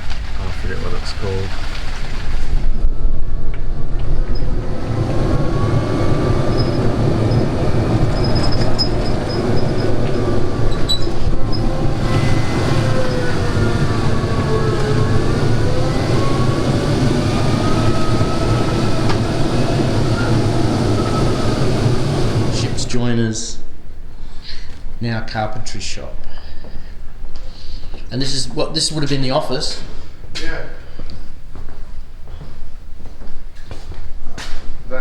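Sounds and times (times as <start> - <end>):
steady low rumble: 0.0 - 24.2
electric motor whining: 4.4 - 23.0.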